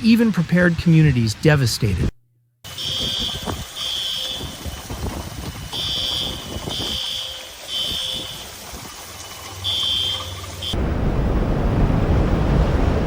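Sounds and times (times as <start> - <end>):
electronic alarm beeping: 2.7 - 4.8, 5.6 - 8.4
steady rumbling background: 10.7 - 13.0.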